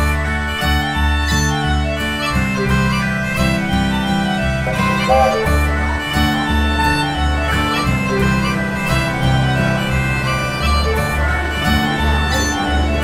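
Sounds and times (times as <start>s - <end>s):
country-folk music: 0.0s - 13.0s
reedy lead melody: 0.0s - 13.0s
bouncing bass line: 4.6s - 5.8s.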